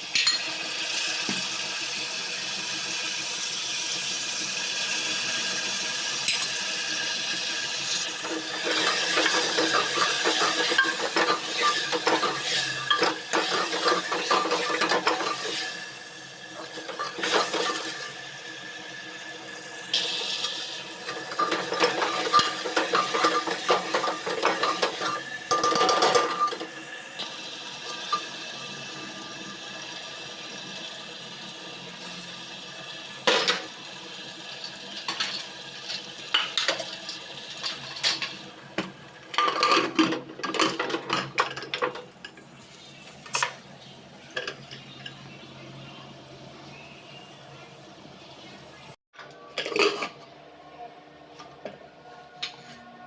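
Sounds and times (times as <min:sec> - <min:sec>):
metal utensil scraping a pan: 0:08.2 - 0:15.8, 0:16.6 - 0:18.2, 0:20.3 - 0:26.7.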